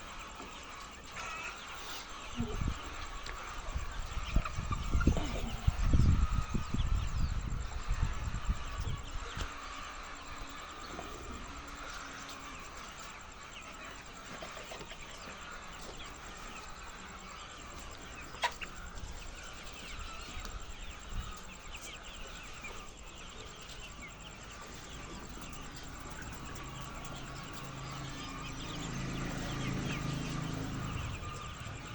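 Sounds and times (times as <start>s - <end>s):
hens clucking: 0.0s - 31.9s.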